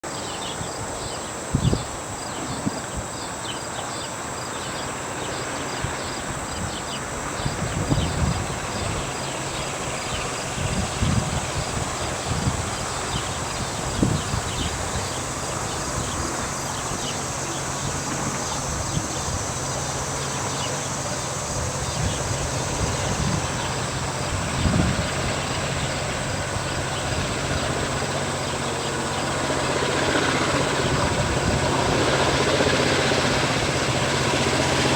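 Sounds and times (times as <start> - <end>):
distant locomotive engine drone: 0.0 - 34.9
insects chirping: 0.0 - 34.9.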